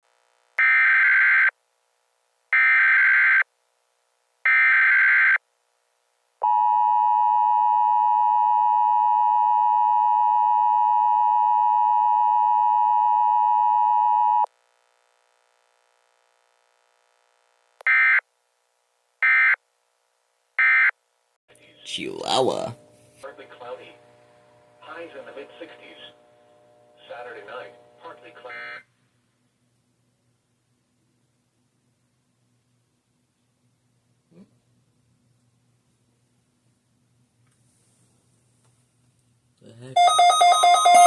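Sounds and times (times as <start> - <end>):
steady warning alarm tone: 40.0 - 41.0.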